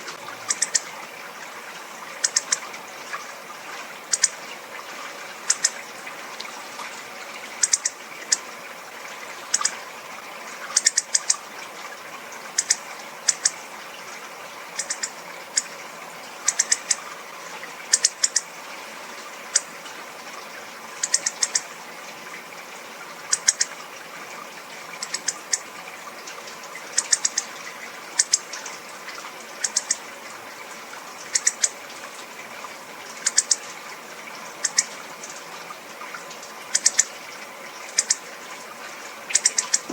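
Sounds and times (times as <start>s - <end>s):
bird giving sharp tic calls: 0.2s - 0.9s, 14.8s - 15.7s.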